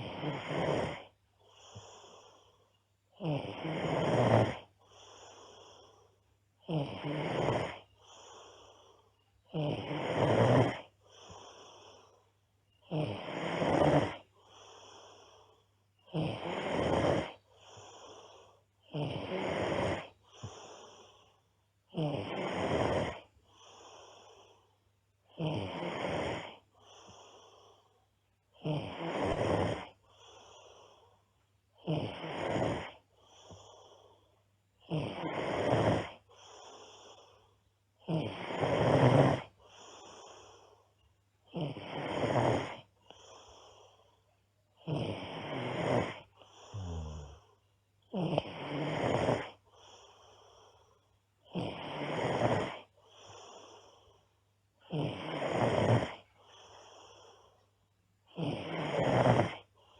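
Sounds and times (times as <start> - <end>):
girl snoring loudly: 0.0 - 2.4, 3.2 - 5.6, 6.6 - 8.6, 9.5 - 12.1, 12.8 - 15.4, 16.0 - 21.3, 21.9 - 24.4, 25.3 - 27.6, 28.5 - 30.0, 31.8 - 33.0, 34.8 - 37.2, 38.0 - 39.6, 41.5 - 43.2, 44.8 - 49.6, 51.5 - 53.9, 54.8 - 56.9, 58.3 - 59.7.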